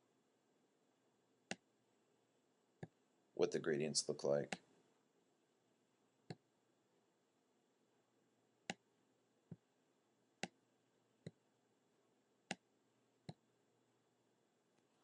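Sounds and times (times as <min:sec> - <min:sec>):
faint room hiss: 0:00.0 - 0:15.0.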